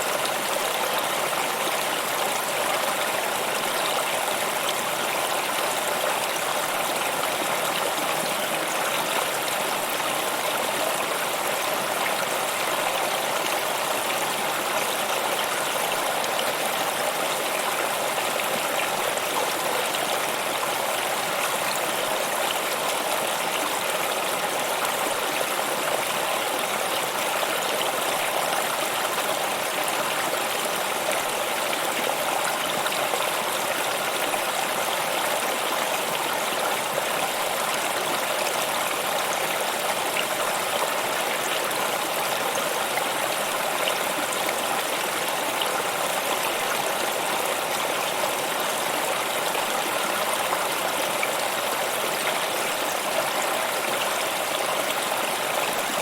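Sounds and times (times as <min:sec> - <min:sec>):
stream water babbling: 0:00.0 - 0:56.0.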